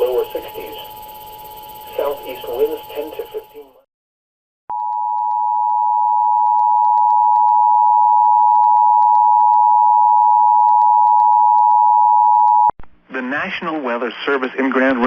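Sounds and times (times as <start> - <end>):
loud steady alarm beep: 0.0 - 3.8.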